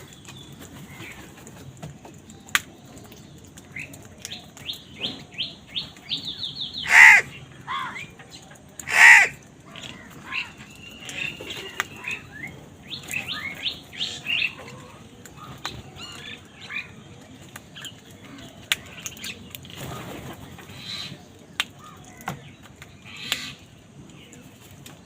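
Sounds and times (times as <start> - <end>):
crows calling: 6.8 - 8.1, 8.8 - 10.6.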